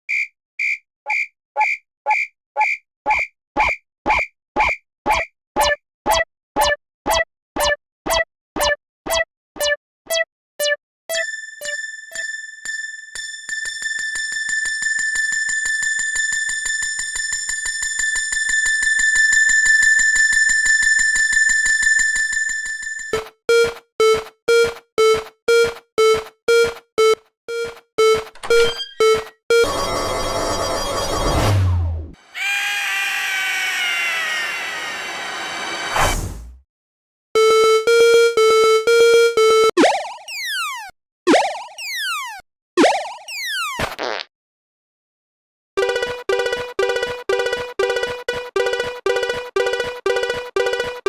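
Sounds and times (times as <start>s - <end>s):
level-crossing warning alarm: 11.1s - 31.6s.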